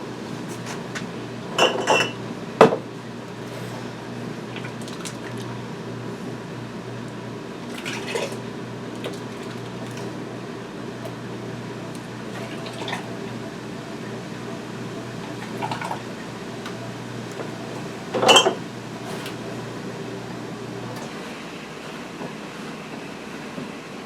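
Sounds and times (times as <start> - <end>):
utensils clinking against glass jars: 1.6 - 2.2, 18.1 - 18.6.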